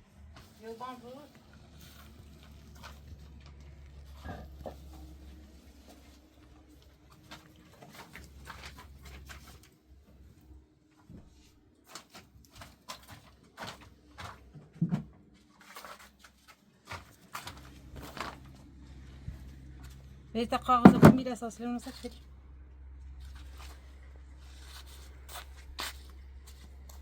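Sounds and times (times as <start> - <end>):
loud thump: 20.8 - 21.2
rustling and scraping strokes: 23.2 - 27.0.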